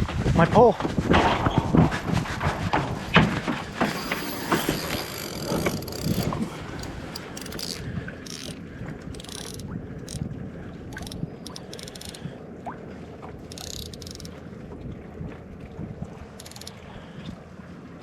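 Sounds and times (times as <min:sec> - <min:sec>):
fishing reel ratcheting and whirring: 0:03.3 - 0:10.2, 0:10.9 - 0:12.2, 0:13.4 - 0:14.4, 0:16.4 - 0:16.8.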